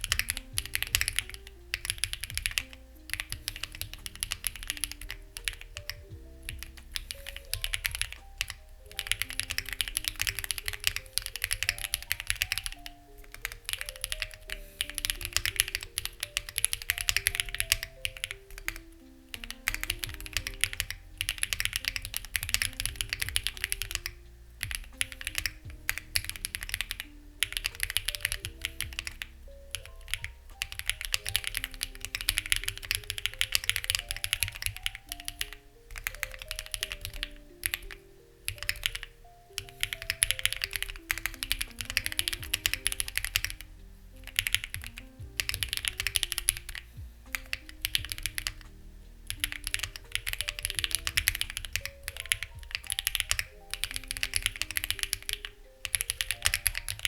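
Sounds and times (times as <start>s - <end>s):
mechanical keyboard key clacks: 0.0s - 37.9s
soft background music: 0.0s - 57.0s.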